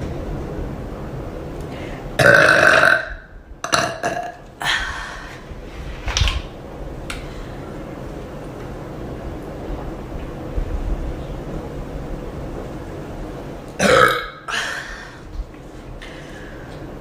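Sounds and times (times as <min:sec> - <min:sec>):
woman burping: 0:02.2 - 0:04.7, 0:13.8 - 0:15.1.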